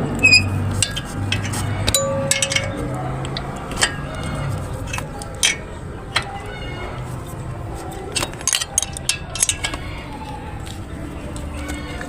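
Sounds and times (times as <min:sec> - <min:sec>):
metallic wrench clinks: 0:00.2 - 0:04.0.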